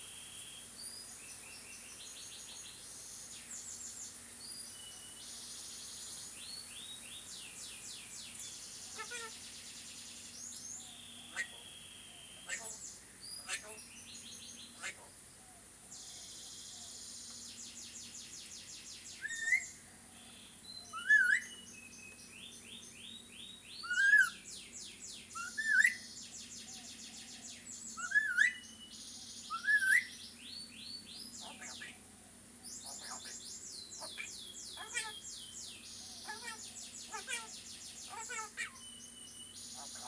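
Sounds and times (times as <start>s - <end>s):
bird whistling: 19.2s - 19.7s, 20.9s - 21.8s, 23.8s - 24.4s, 25.3s - 26.1s, 28.0s - 28.7s, 29.5s - 30.1s.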